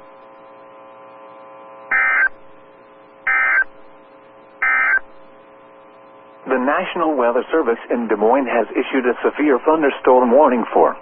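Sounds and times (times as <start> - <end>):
faint radio hum: 0.0 - 11.0
digital data tone bursts: 1.2 - 7.7.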